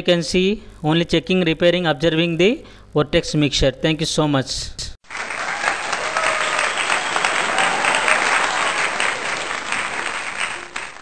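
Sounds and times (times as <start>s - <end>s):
crowd applause: 5.0s - 11.0s.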